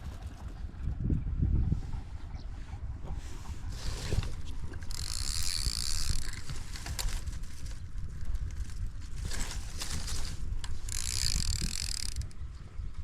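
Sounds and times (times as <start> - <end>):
handling rumble: 0.0 - 13.0
reel whir: 3.3 - 12.4
fishing reel clicking: 4.8 - 7.1, 10.2 - 12.4.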